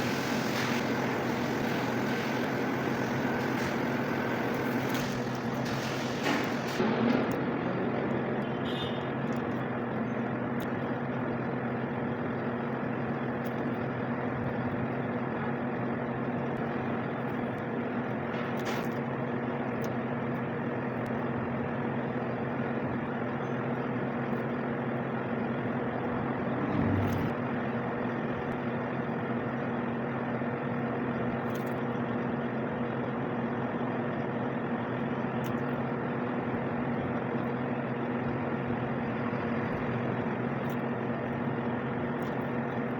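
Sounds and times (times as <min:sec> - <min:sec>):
machine hum: 0:00.0 - 0:10.1, 0:23.2 - 0:28.6.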